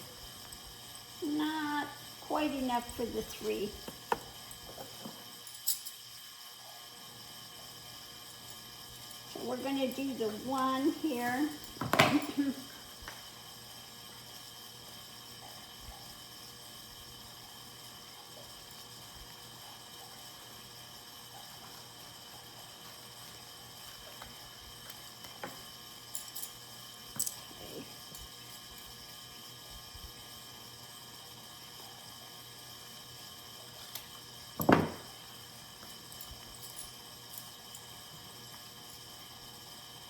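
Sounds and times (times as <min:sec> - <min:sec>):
fan hissing: 0:01.2 - 0:04.2, 0:09.3 - 0:12.9.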